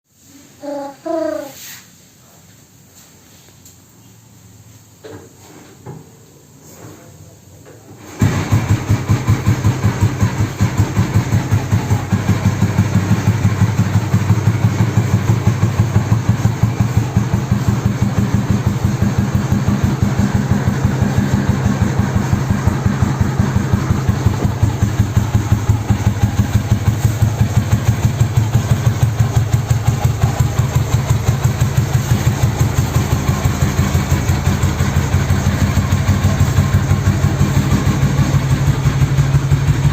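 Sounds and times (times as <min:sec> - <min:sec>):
motorcycle engine idling: 0:08.2 - 0:39.9.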